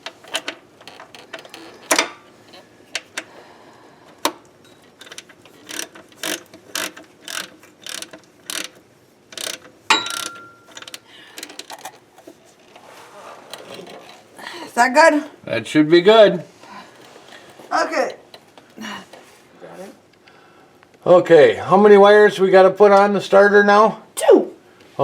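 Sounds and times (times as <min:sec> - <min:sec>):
ratchet wrench clicking: 0:05.0 - 0:11.9
metal clink: 0:09.9 - 0:11.0.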